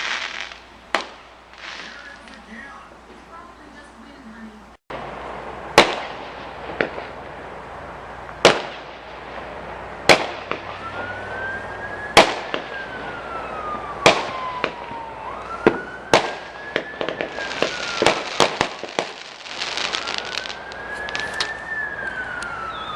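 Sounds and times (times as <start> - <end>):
fireworks bangs and crackling: 0.0 - 2.8, 4.9 - 22.9
siren wailing: 10.4 - 22.9.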